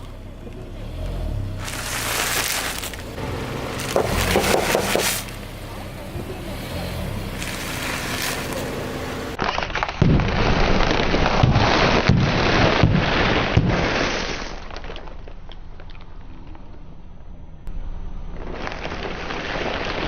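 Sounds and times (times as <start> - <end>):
tyre crushing crunchy objects: 0.8 - 5.5, 7.0 - 15.4.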